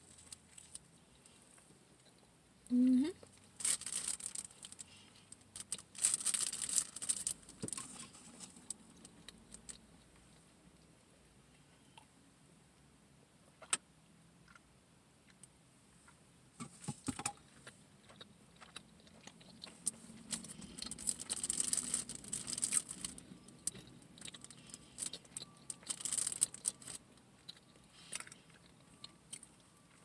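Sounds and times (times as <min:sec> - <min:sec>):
close chewing: 0:17.5 - 0:30.0.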